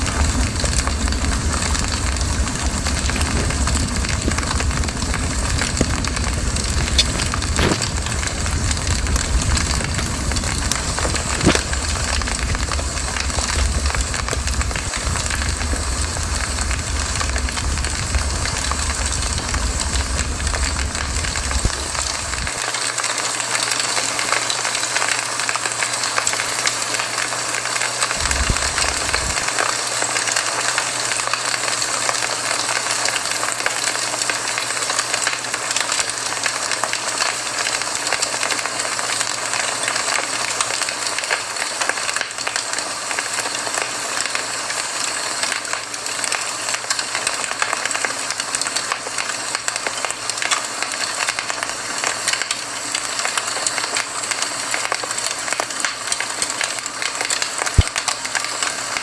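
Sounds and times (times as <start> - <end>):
low rumble: 0.0 - 22.6, 28.2 - 29.4
campfire crackling and popping: 0.0 - 59.0.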